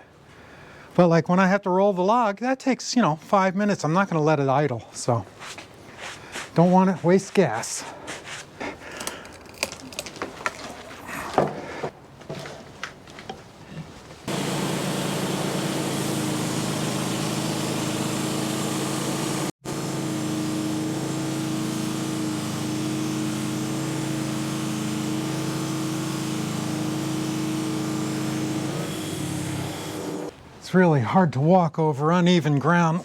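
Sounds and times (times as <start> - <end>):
gasoline engine running: 14.3 - 30.3.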